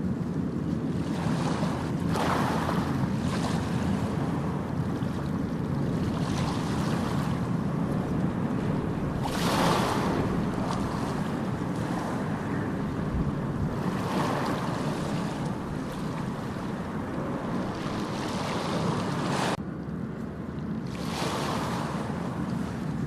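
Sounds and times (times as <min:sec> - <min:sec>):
ocean waves washing onto beach: 0:00.0 - 0:19.6, 0:20.6 - 0:23.0
wind rumbling on microphone: 0:00.0 - 0:23.0.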